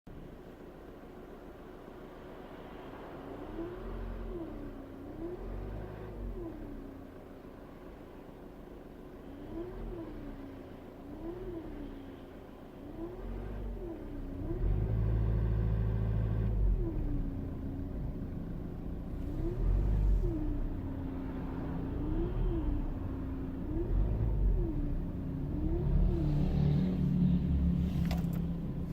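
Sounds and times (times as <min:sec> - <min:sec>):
diesel engine running: 0:16.5 - 0:28.9.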